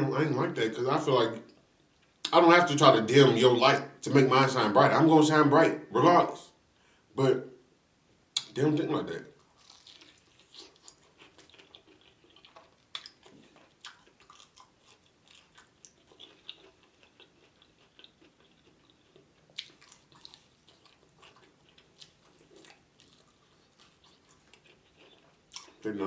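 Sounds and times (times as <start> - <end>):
chewing crunches: 9.3 - 25.9.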